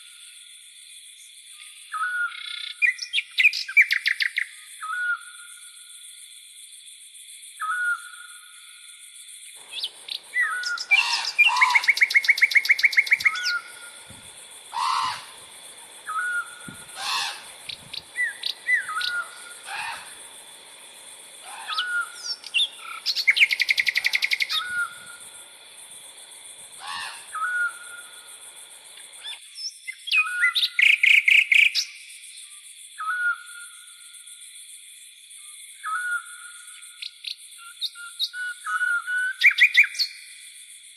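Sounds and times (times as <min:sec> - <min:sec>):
crickets droning: 0:00.0 - 0:40.9
loud rapid bird trills: 0:09.6 - 0:25.2, 0:26.8 - 0:28.1
birds calling: 0:09.6 - 0:25.3, 0:26.8 - 0:28.0.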